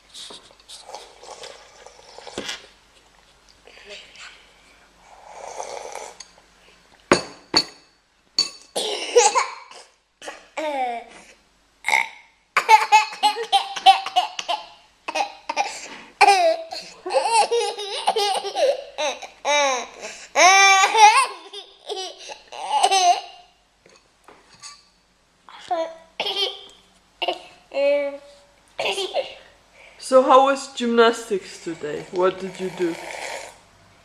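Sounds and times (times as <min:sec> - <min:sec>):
children laughing: 0:12.6 - 0:15.4.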